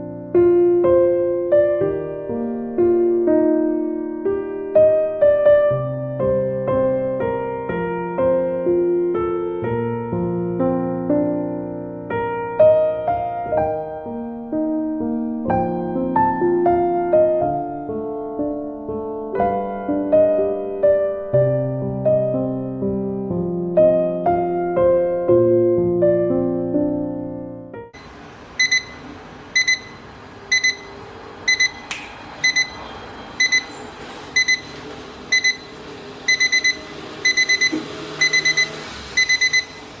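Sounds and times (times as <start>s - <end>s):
electric piano melody: 0.0s - 28.0s
alarm clock beeping: 28.6s - 33.7s, 34.4s - 40.0s
sharp click: 31.8s - 32.2s.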